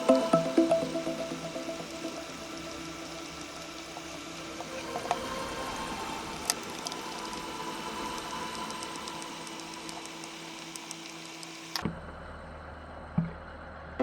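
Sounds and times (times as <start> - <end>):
steady hum: 0.0 - 13.0
sharp clicks: 8.5 - 11.8.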